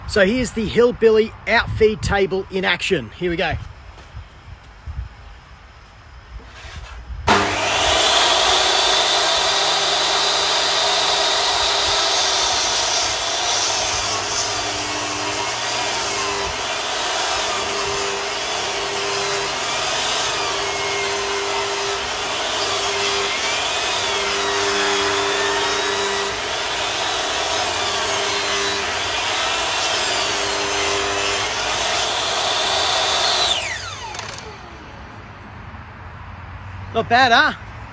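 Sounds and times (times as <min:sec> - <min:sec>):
table saw cutting wood: 0:06.5 - 0:35.0.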